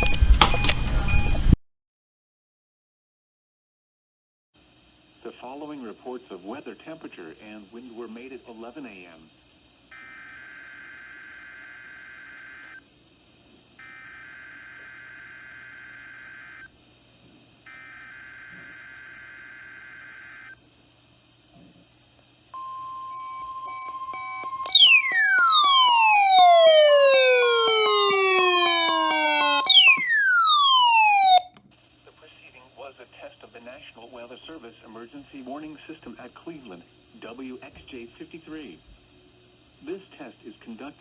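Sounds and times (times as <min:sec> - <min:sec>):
steady warning alarm tone: 0:22.6 - 0:31.5
tones gliding down in pitch: 0:22.6 - 0:31.5
shrill buzzing digital bursts: 0:22.9 - 0:31.5.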